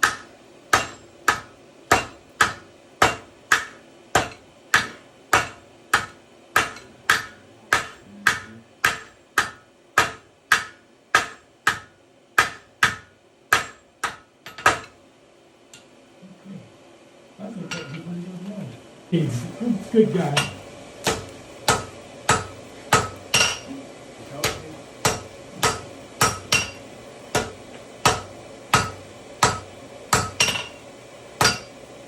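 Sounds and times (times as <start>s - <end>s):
hammer striking iron on anvil: 0.0s - 15.0s, 20.4s - 23.7s, 24.4s - 30.8s, 31.4s - 31.8s.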